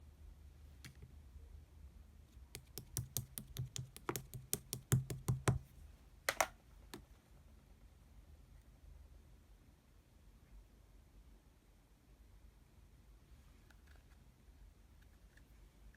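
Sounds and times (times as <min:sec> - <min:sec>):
sharp taps or clicks: 0:02.6 - 0:05.6, 0:06.3 - 0:07.0.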